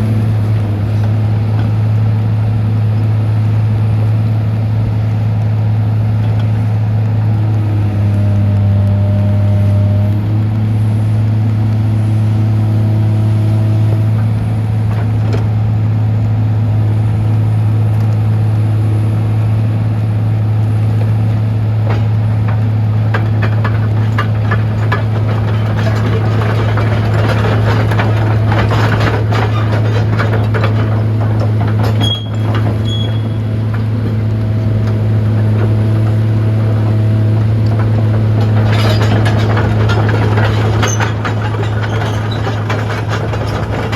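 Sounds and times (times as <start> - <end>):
excavator diesel engine humming: 0.0 - 43.9
rattling and clicking: 21.8 - 43.9.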